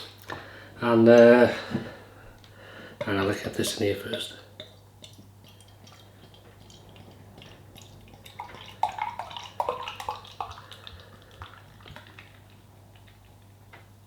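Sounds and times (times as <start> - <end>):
beer pouring into a glass: 7.7 - 12.6.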